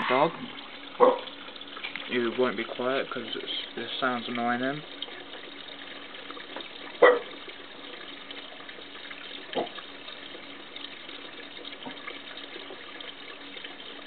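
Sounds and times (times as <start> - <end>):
animal bark-like call: 7.0 - 7.3.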